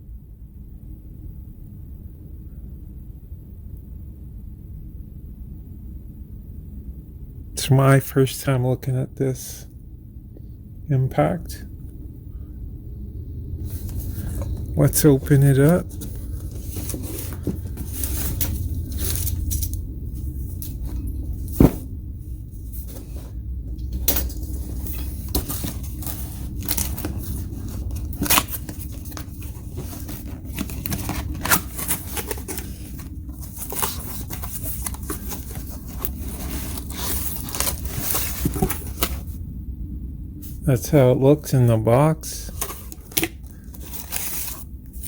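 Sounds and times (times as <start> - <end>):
steady low hum: 0.0 - 45.0
cardboard scraping: 13.6 - 21.9, 22.5 - 39.4, 42.5 - 45.0
clicks and knocks of packing: 22.7 - 39.4
cardboard tearing and cutting: 24.8 - 39.2, 42.5 - 44.6.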